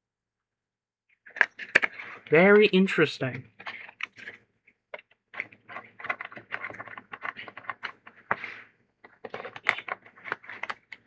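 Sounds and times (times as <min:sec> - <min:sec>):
cards being shuffled: 0:05.0 - 0:11.0.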